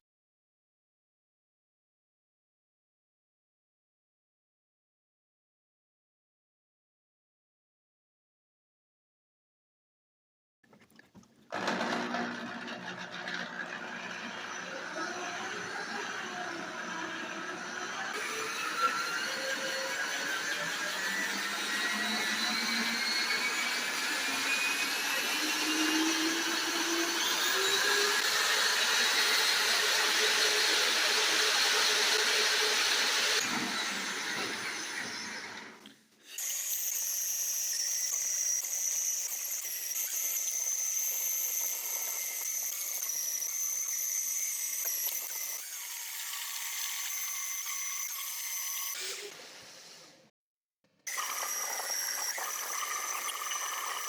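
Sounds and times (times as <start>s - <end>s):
power tool motor whine: 11.6s - 50.3s
high-pitched tool whine: 13.3s - 35.6s, 36.3s - 49.9s, 51.1s - 54.0s.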